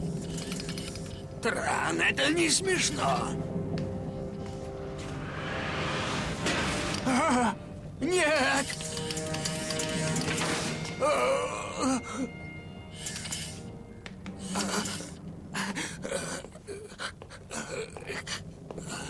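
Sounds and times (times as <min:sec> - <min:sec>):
background score music: 0:00.0 - 0:19.0
gasps and heavy breathing: 0:14.3 - 0:19.0.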